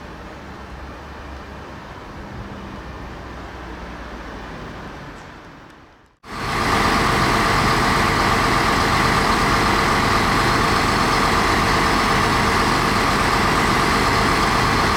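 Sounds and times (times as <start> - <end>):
diesel engine idling: 6.2 - 14.9.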